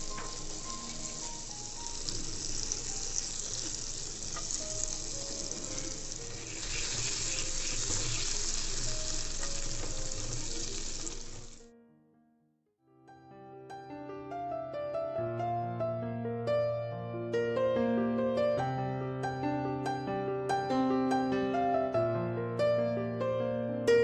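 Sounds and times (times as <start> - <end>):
food sizzling in hot oil: 0.0 - 11.6.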